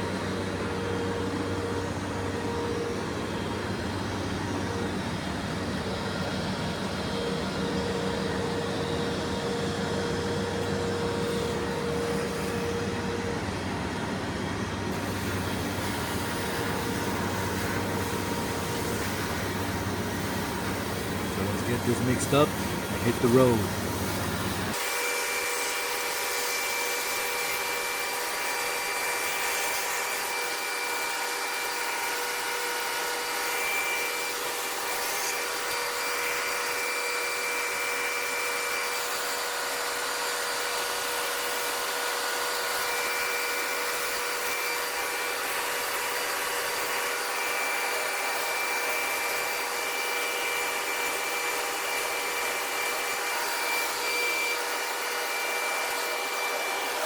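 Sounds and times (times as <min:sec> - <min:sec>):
whining tones: 0:00.0 - 0:24.8
concrete mixer drum whirring: 0:00.0 - 0:57.0.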